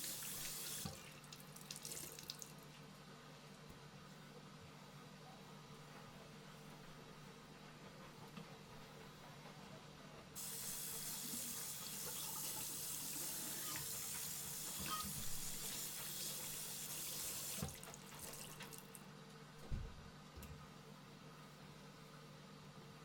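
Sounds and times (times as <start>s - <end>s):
tap water running into sink: 0.0s - 2.6s, 10.4s - 19.0s.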